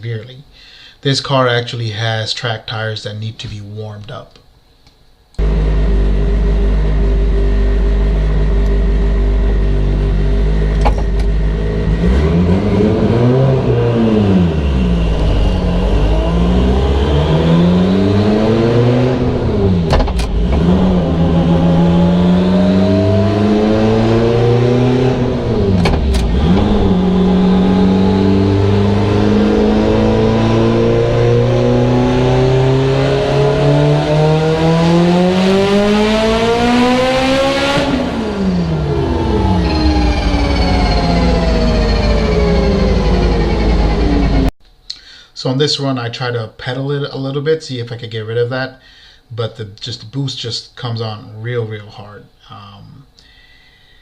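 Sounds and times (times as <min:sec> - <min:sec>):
car engine revving: 0:05.4 - 0:44.6
engine sharp cracks: 0:10.4 - 0:22.3, 0:24.8 - 0:29.2.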